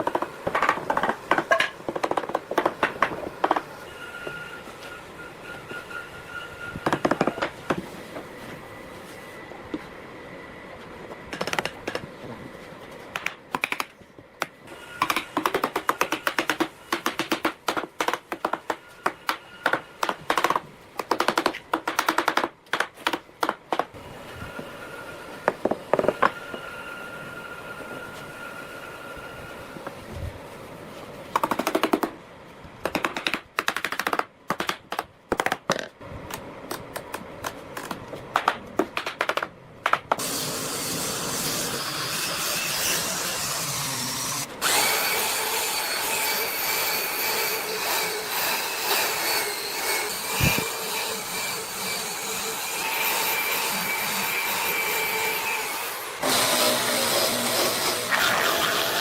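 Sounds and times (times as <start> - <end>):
power tool on wood: 40.2 - 46.2, 54.9 - 59.0.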